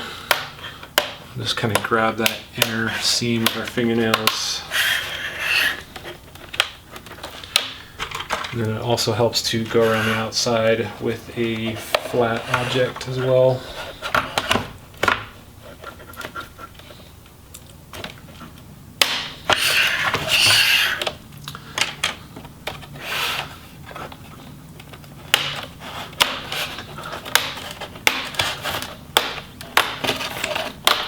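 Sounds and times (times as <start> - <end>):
flat tool scraping along seam: 4.2 - 5.9, 9.6 - 14.4, 19.5 - 21.1.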